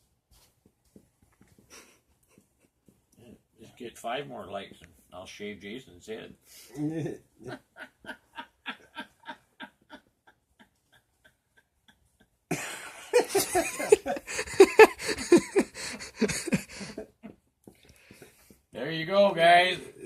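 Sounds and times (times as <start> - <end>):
hearty laughter: 6.9 - 17.4
short rhythmic laughs: 7.0 - 17.4.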